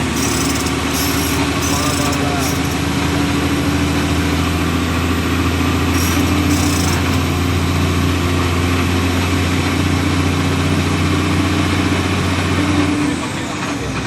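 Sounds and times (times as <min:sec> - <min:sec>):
hissing bursts: 0:00.0 - 0:02.8.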